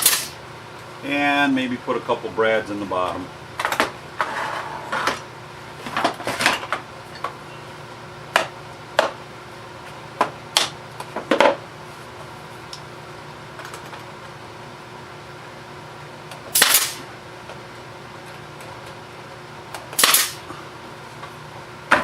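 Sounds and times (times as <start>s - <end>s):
nailer firing into wood: 0.0s - 0.4s, 16.5s - 17.0s, 19.9s - 20.4s.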